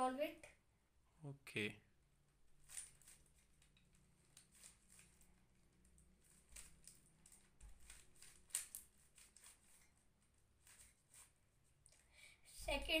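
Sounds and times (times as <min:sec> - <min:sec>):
puzzle cube clicking: 0:06.3 - 0:09.7.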